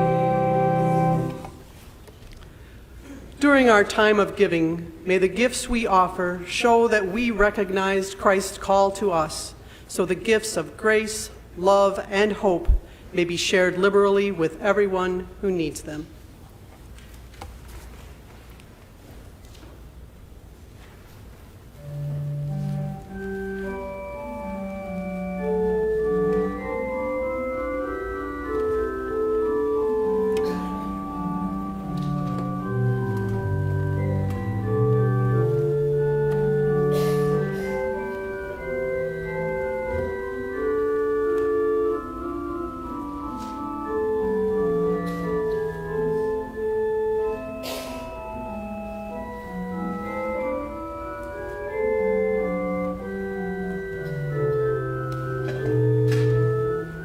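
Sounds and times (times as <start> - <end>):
church organ playing chords: 0.0 - 1.7, 21.7 - 57.0.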